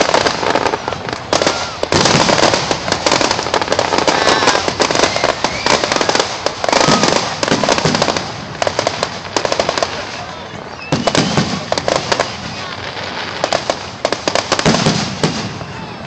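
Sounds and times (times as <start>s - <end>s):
fireworks crackling and banging: 0.0s - 16.0s.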